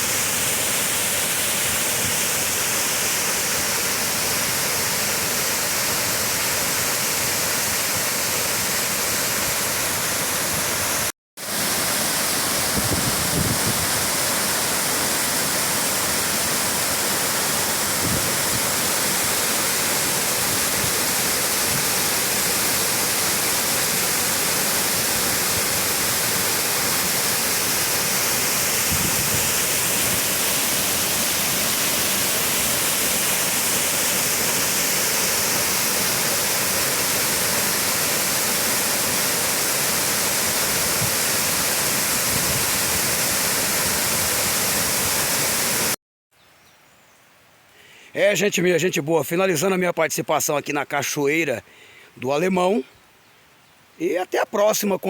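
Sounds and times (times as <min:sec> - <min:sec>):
waterfall rushing: 0:00.0 - 0:46.0.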